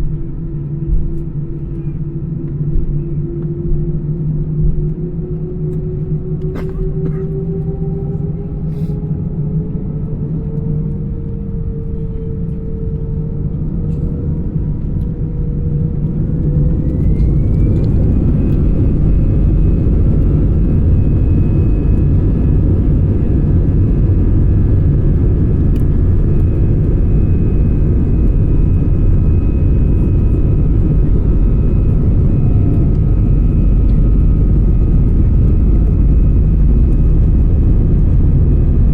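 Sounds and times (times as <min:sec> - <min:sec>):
low rumble of takeoff roll: 0:00.0 - 0:38.9
jet engines spooling up: 0:13.7 - 0:38.9.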